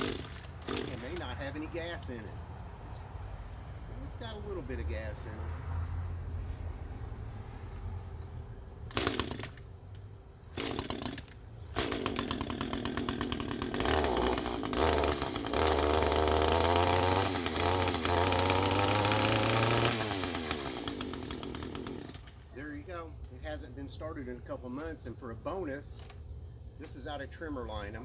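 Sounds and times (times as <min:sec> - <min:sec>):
pull-start cord bursts: 0:00.0 - 0:01.5, 0:08.9 - 0:09.6, 0:10.5 - 0:22.4
string trimmer engine revving: 0:00.0 - 0:01.6, 0:08.9 - 0:09.6, 0:10.6 - 0:22.4.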